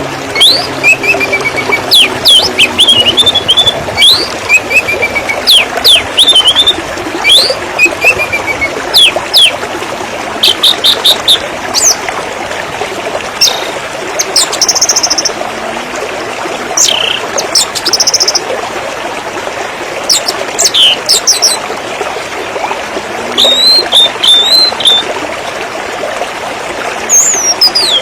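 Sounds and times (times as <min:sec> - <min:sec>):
birds calling: 0:00.0 - 0:09.6, 0:20.1 - 0:21.6, 0:23.4 - 0:25.0
river water flowing: 0:00.0 - 0:28.0.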